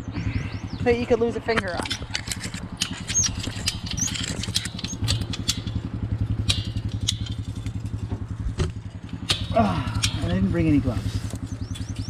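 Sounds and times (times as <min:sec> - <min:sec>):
vehicle engine idling: 0:00.0 - 0:12.0
sharp clicks and clinks: 0:01.6 - 0:08.1.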